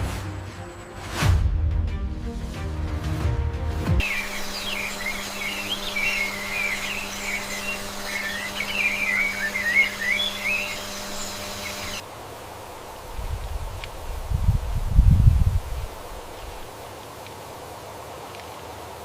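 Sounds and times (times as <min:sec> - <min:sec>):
birds chirping and whistling: 0:04.0 - 0:12.0
faint steady hum: 0:04.0 - 0:18.0.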